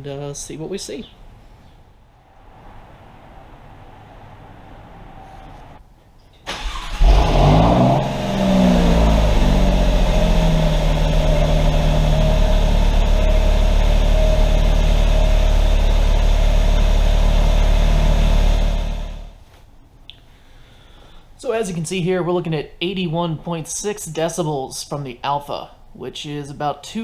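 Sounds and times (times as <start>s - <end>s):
car engine starting and idling: 6.4s - 19.4s.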